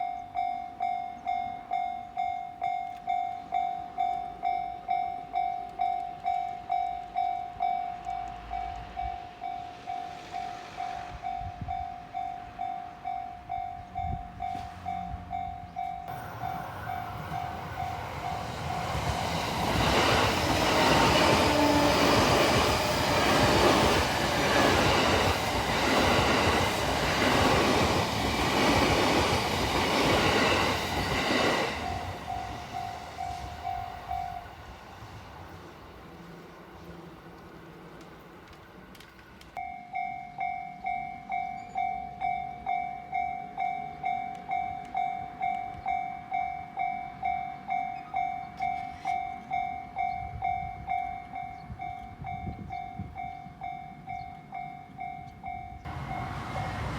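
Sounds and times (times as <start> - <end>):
level crossing warning bell: 0.0 - 27.5, 28.8 - 34.7, 39.6 - 56.9
train rumbling and wheel clatter: 2.1 - 39.6, 40.4 - 56.9.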